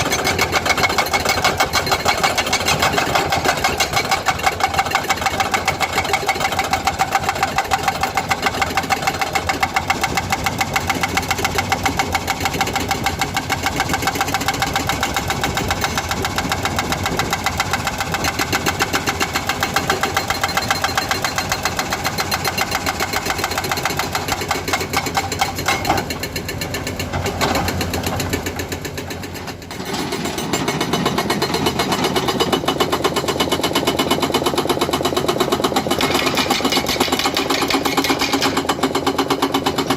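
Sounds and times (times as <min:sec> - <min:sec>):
excavator engine running: 0:00.0 - 0:39.9
hydraulic breaker hammering rock: 0:00.0 - 0:39.9.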